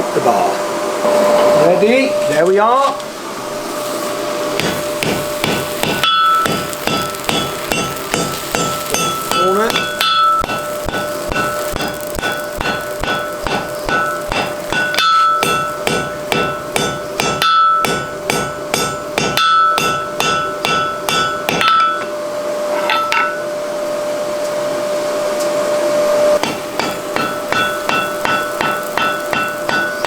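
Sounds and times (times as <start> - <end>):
steady hum and hiss: 0.0 - 30.0
hammer striking steel on anvil: 4.6 - 22.2, 22.8 - 23.5, 26.4 - 30.0.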